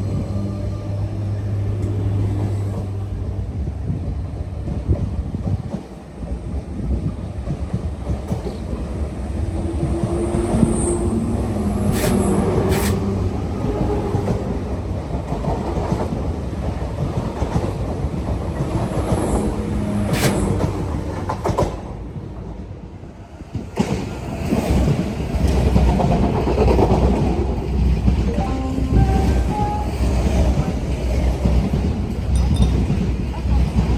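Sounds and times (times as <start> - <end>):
train rumbling past: 0.0 - 33.9.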